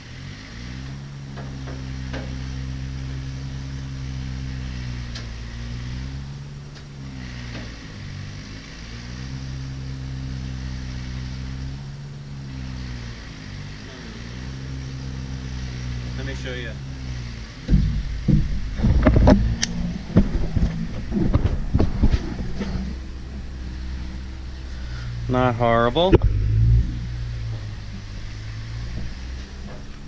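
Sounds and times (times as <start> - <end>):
motor humming: 17.6 - 30.0.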